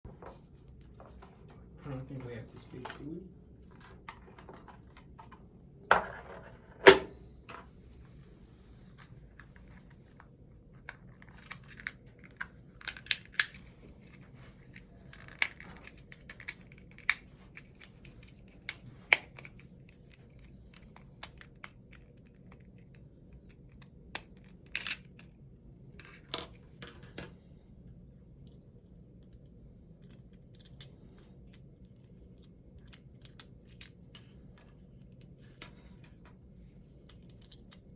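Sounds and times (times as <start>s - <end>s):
clicks and snaps of small parts: 10.8s - 14.2s, 15.1s - 25.3s, 29.2s - 36.4s, 37.0s - 37.9s.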